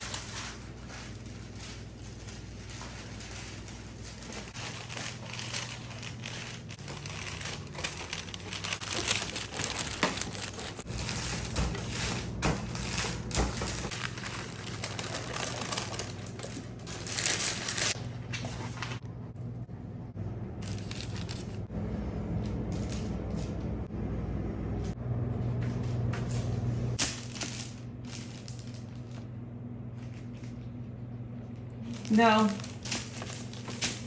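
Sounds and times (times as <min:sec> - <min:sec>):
plastic packaging crinkling: 0:00.0 - 0:18.0, 0:20.6 - 0:21.6, 0:27.0 - 0:29.3, 0:31.4 - 0:34.0
low steady hum: 0:00.0 - 0:34.0.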